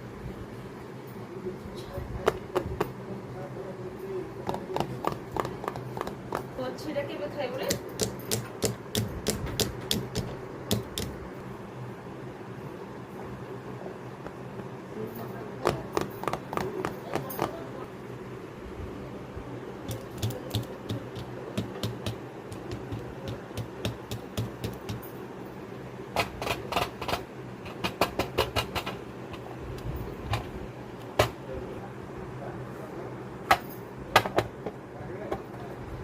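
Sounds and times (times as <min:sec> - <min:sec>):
steady low hum: 0:00.0 - 0:36.0
fidget toys clicking: 0:19.9 - 0:25.0.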